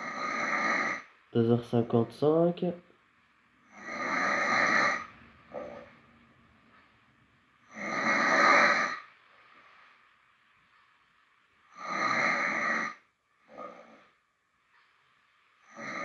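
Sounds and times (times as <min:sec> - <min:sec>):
man snoring: 0:00.0 - 0:01.0, 0:03.7 - 0:05.9, 0:07.7 - 0:09.0, 0:11.8 - 0:13.0, 0:15.7 - 0:16.0.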